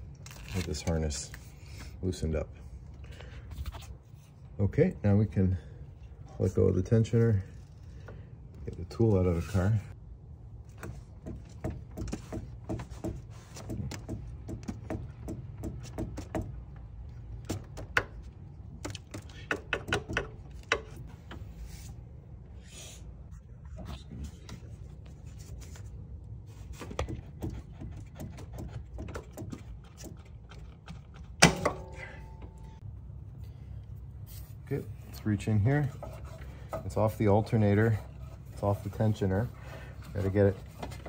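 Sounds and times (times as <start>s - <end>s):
steady low hum: 0.0s - 41.0s
tool clicking and knocking in engine: 10.8s - 21.4s, 27.0s - 32.6s.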